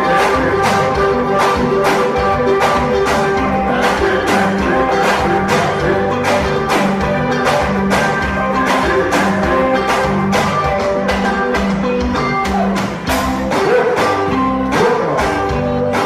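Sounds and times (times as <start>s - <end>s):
guitar: 0.0s - 16.0s
music with percussive beat: 0.0s - 16.0s.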